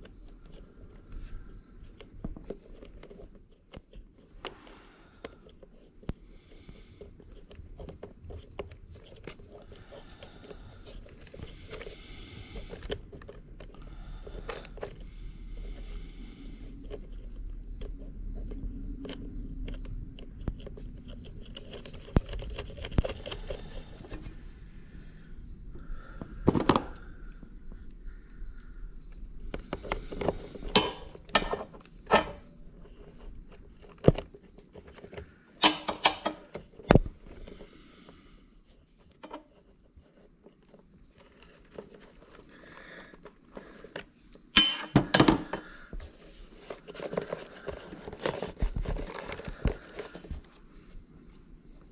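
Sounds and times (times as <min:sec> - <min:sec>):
hand tools clicking and knocking: 0:29.5 - 0:32.6, 0:33.5 - 0:37.1, 0:39.1 - 0:39.8, 0:43.8 - 0:50.5
rattling clicks: 0:35.6 - 0:36.6.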